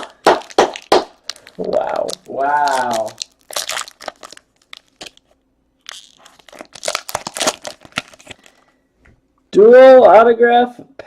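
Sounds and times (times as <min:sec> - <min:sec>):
plastic packaging crinkling: 0:00.0 - 0:08.8.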